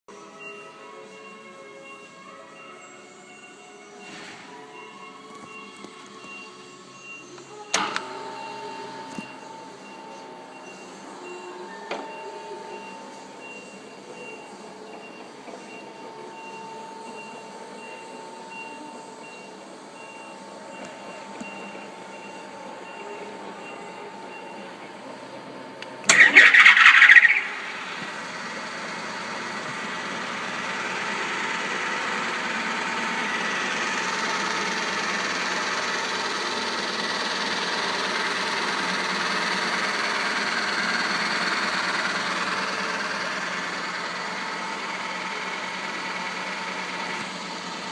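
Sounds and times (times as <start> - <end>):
faint electronic beep: 0.1 - 28.1
car engine idling: 21.5 - 47.9
car starter grinding: 26.0 - 47.9.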